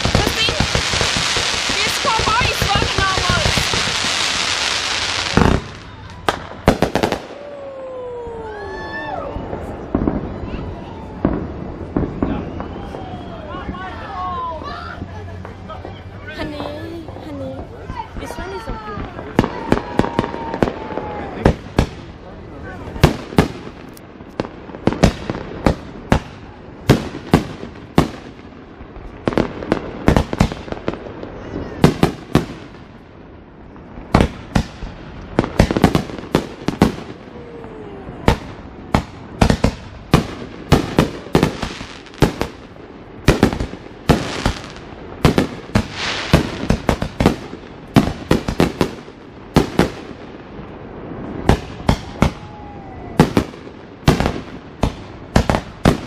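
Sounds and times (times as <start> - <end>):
faint firework whistling: 0.0 - 16.3, 43.3 - 49.0
fireworks bangs and crackling: 0.0 - 56.0.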